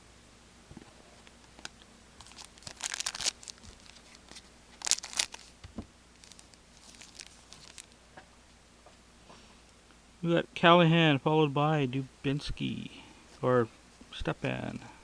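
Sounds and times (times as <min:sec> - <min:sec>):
card pack wrapper crinkling: 0:01.6 - 0:05.6, 0:06.2 - 0:08.0.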